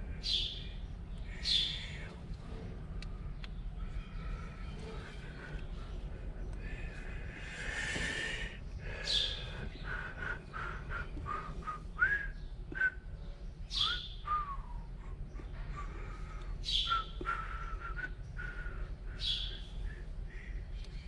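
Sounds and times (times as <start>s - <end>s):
birds chirping and whistling: 0.1s - 2.2s, 3.1s - 21.0s.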